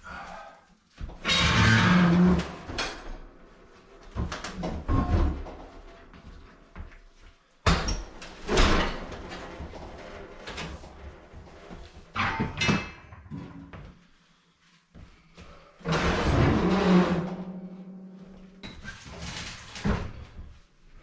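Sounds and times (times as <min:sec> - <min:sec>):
heavy objects banging and scraping: 0:04.1 - 0:06.5, 0:15.9 - 0:20.3.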